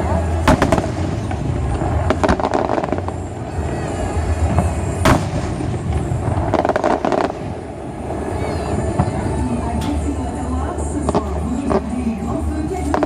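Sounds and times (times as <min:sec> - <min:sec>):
firework bang: 0:00.0 - 0:10.1
firework crackles: 0:00.0 - 0:13.0
low rumble: 0:00.0 - 0:13.0.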